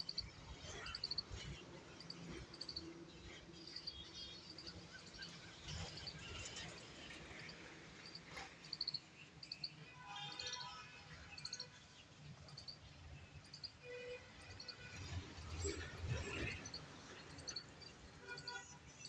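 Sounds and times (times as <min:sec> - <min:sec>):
small birds chirping: 0:01.9 - 0:02.9, 0:07.4 - 0:09.7.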